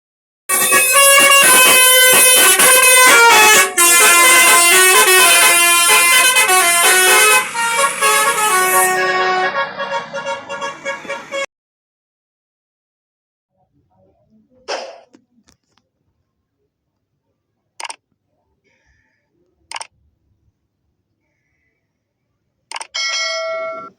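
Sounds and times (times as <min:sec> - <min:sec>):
bus horns playing a tune: 0:00.5 - 0:11.5, 0:23.0 - 0:23.9.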